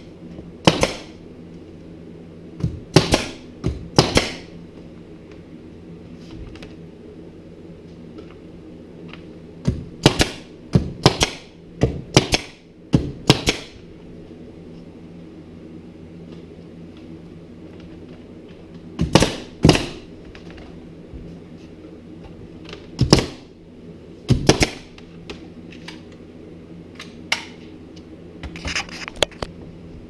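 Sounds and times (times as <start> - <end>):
low hum: 0.0 - 30.0
nails driven into wood: 0.6 - 1.1, 2.9 - 3.4, 4.0 - 4.5, 10.0 - 11.5, 12.1 - 13.7, 24.3 - 24.9.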